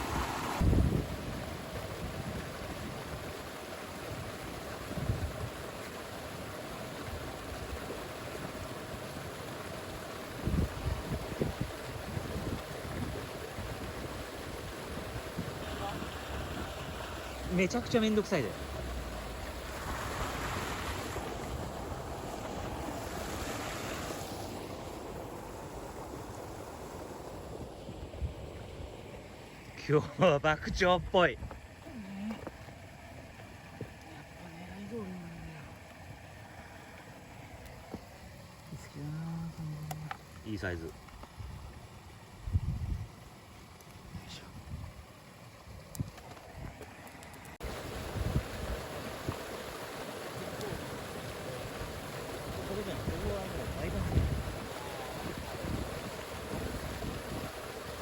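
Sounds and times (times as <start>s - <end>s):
wind buffeting microphone: 0.0s - 3.5s, 4.1s - 5.8s, 10.2s - 29.8s, 41.3s - 43.3s, 44.3s - 46.8s, 47.6s - 58.0s
river rushing: 0.0s - 4.9s, 14.6s - 28.0s, 46.4s - 58.0s.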